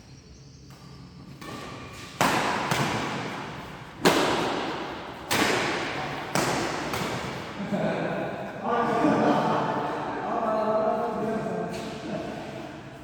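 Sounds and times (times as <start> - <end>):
rackets hitting shuttlecock: 0.8 - 7.6.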